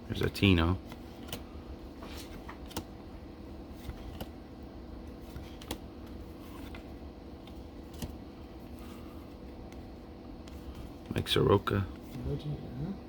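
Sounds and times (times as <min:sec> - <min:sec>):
low room hum: 0:00.0 - 0:13.0
cards sliding off stack: 0:05.2 - 0:08.2.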